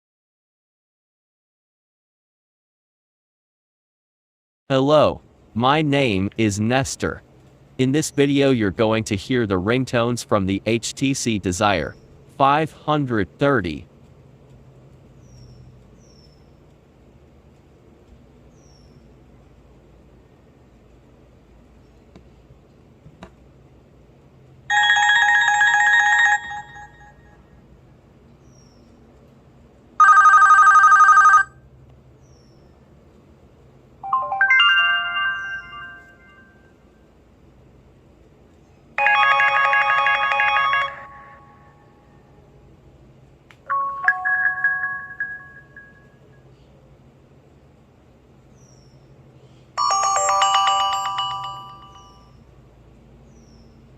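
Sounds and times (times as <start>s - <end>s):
warbling electronic ringtone: 24.7s - 27.4s, 34.0s - 36.7s, 39.0s - 42.0s, 43.7s - 46.3s, 49.8s - 52.4s.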